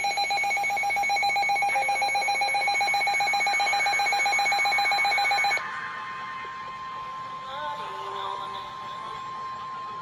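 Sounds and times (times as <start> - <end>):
trilling high-pitched alarm beep: 0.0 - 5.6.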